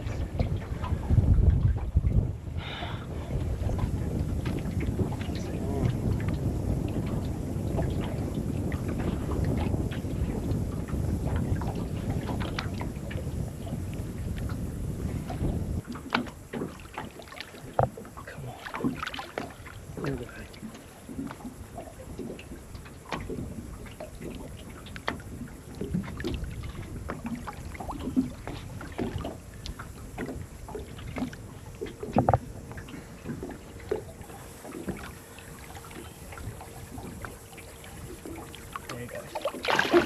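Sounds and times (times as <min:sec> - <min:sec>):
knocks and clicks of gear in boat: 0:03.4 - 0:40.0.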